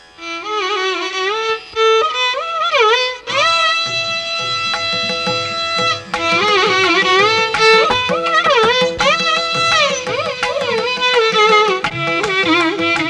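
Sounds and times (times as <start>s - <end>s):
lower accompaniment: 1.2s - 13.0s
light percussive strokes: 2.6s - 13.0s
sliding instrumental melody: 2.6s - 13.0s.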